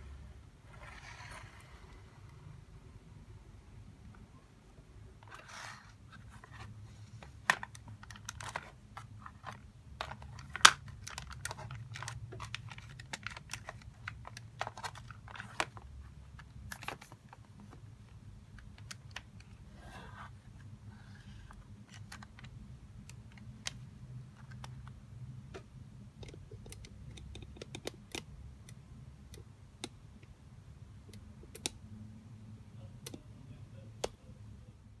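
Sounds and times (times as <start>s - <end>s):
low steady hum: 0.0s - 35.0s
plastic pieces clicking and tapping: 26.2s - 30.0s.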